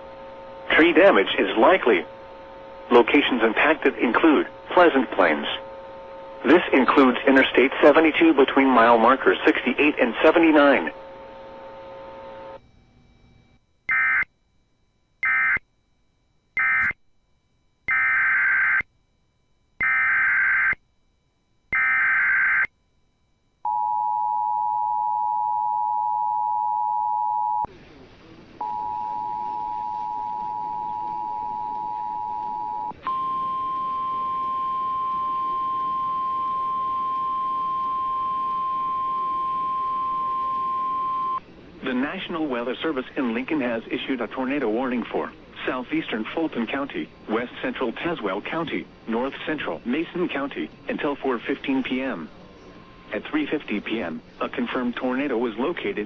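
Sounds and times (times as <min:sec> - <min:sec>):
steady warning alarm tone: 0:00.0 - 0:17.0, 0:17.8 - 0:27.7, 0:28.6 - 0:41.4
two-tone attention signal: 0:28.6 - 0:41.4.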